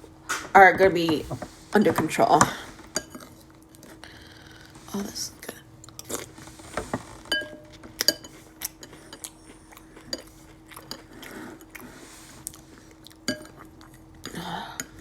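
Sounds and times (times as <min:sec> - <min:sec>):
chewing crunchy cereal: 0:03.2 - 0:04.8, 0:05.8 - 0:15.0.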